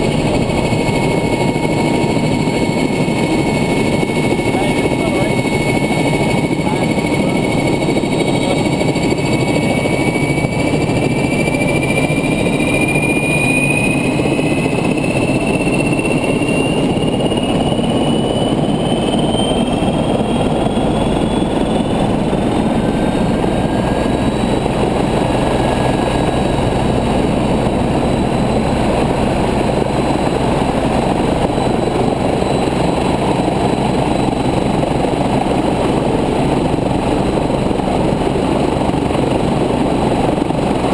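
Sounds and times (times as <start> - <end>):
helicopter turbine engine running: 0.0 - 40.9.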